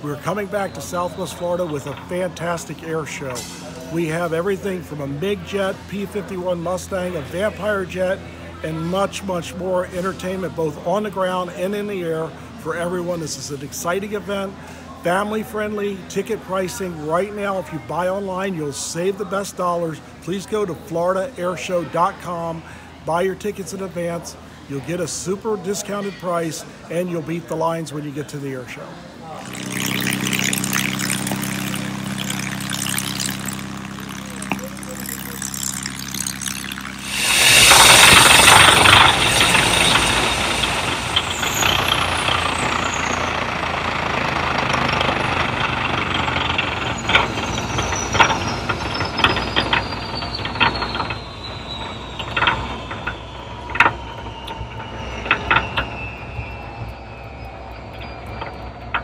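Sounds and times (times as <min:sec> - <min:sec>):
high whine falling in pitch: 0:29.3 - 0:43.5, 0:50.2 - 0:59.0
jet rush: 0:29.4 - 0:42.8
aircraft engine hum: 0:29.7 - 0:42.9.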